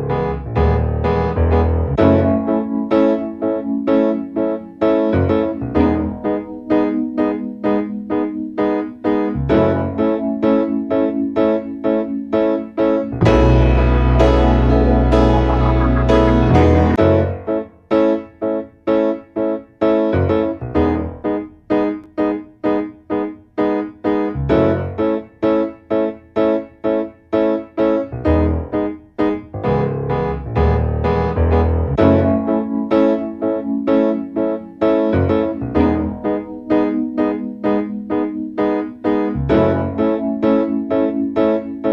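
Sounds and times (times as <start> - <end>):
piano playing detached notes: 9.9 - 17.6.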